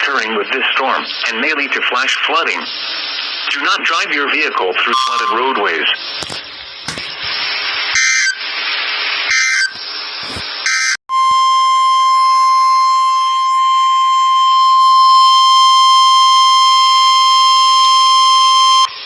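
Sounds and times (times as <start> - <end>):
steady single-pitch attention tone: 11.1 - 19.0.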